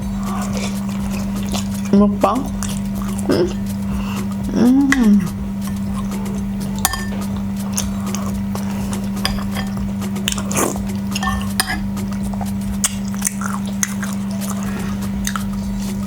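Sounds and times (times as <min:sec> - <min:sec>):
chewing: 0:00.0 - 0:16.0
steady low hum: 0:00.0 - 0:16.0
cutlery clinking on dishes: 0:06.8 - 0:14.7.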